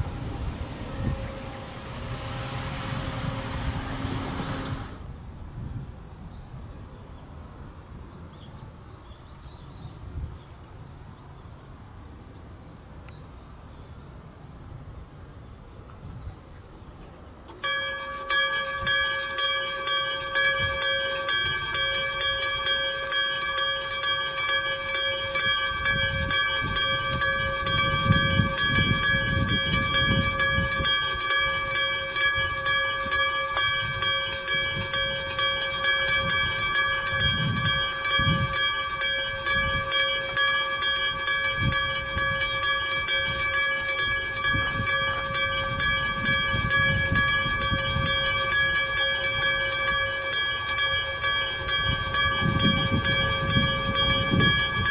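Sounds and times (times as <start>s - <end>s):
level crossing warning bell: 0.0s - 4.9s, 17.5s - 54.9s
low rumble: 0.0s - 5.2s.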